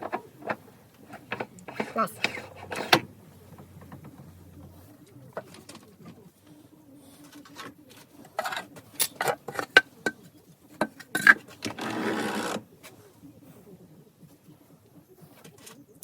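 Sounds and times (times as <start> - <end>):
metal tools clicking and knocking: 7.5 - 12.6.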